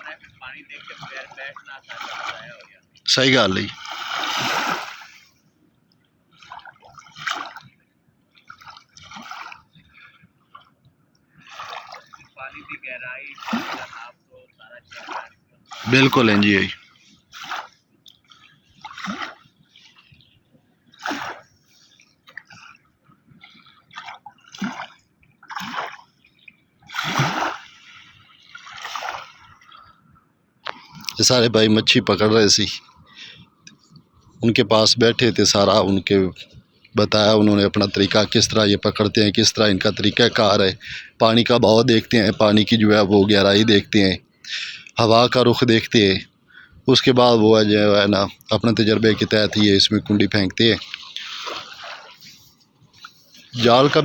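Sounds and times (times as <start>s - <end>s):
river water splashing and dripping: 0.0s - 54.0s
loud splash: 3.7s - 5.3s, 13.3s - 14.0s, 21.0s - 21.5s, 24.0s - 26.0s, 26.9s - 28.0s, 28.6s - 29.4s, 50.6s - 52.4s.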